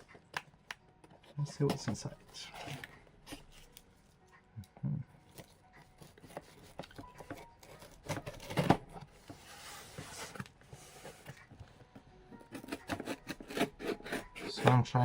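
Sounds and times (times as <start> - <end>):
rustling scraping noise: 9.2 - 11.5.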